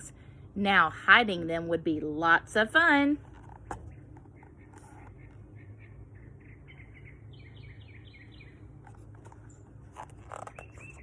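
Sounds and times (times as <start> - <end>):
low steady hum: 0.0 - 11.0
small bird chirping: 3.5 - 11.0.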